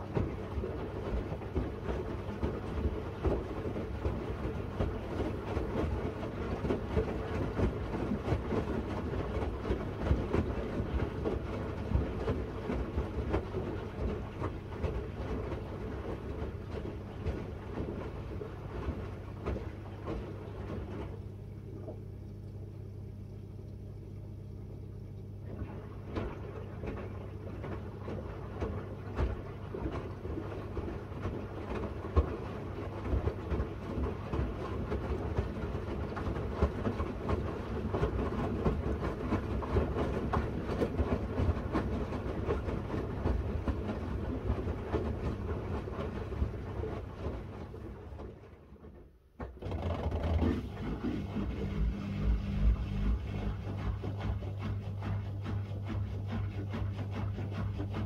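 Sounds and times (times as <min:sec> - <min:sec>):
washing machine motor hum: 0:00.0 - 0:58.0
laundry tumbling in drum: 0:25.4 - 0:58.0.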